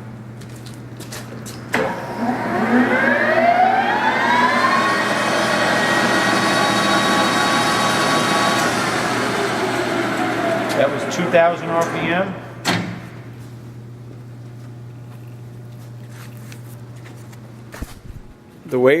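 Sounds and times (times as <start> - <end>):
lathe spindle whine: 1.8 - 12.5.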